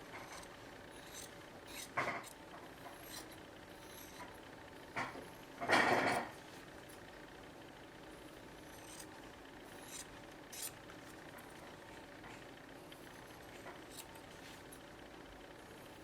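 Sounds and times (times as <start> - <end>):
leather cutting scrapes: 0.2 - 4.3, 8.6 - 11.2, 13.2 - 14.8.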